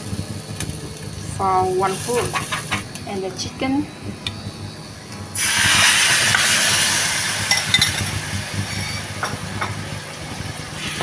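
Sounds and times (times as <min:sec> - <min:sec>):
chicken sizzling in hot oil: 0:00.0 - 0:03.1, 0:05.3 - 0:11.0.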